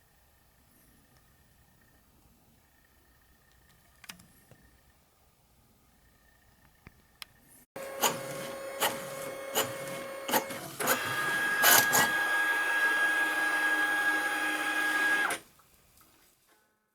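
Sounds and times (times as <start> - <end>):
printer clicks: 7.8 - 15.4
printer high whine: 7.8 - 15.4
printer motor hum: 7.8 - 15.4.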